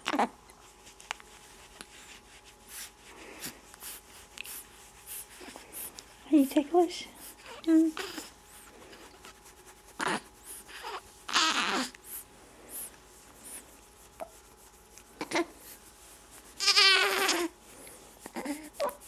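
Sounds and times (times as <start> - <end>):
baby cooing and squealing: 10.8 - 11.9, 16.6 - 17.5.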